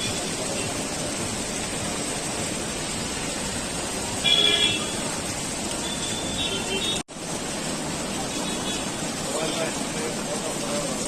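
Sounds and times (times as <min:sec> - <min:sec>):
street noise: 0:00.0 - 0:11.0
vehicle horn: 0:04.2 - 0:05.0.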